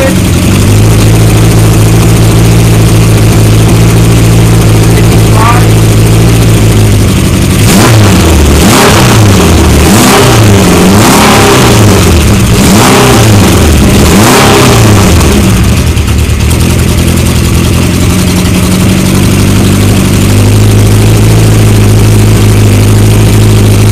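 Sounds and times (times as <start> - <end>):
motorcycle engine idling: 0.0 - 8.6, 15.0 - 23.9
motorcycle engine revving: 0.0 - 23.9.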